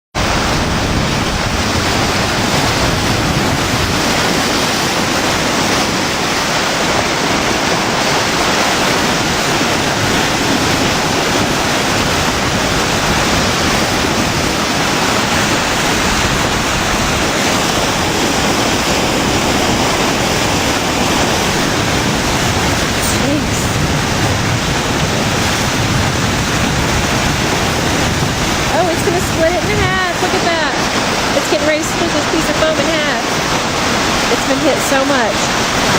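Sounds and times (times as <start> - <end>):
rush of falling water: 0.2 - 35.9.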